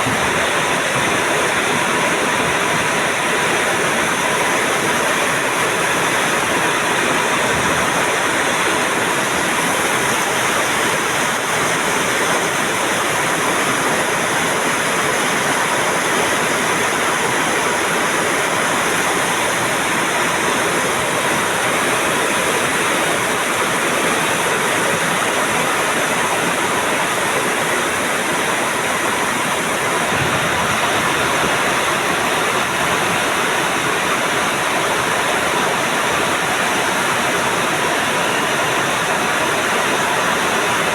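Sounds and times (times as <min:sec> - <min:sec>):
heavy rain pouring: 0:00.0 - 0:40.9.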